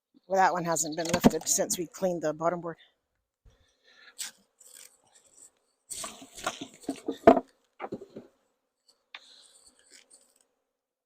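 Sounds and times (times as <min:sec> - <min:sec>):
wood scraping on wood: 0:04.2 - 0:10.4.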